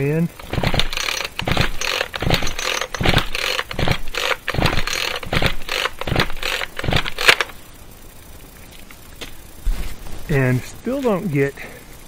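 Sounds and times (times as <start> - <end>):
chainsaw engine turning over: 0.0 - 7.6
recoil cord rasping: 0.3 - 7.6.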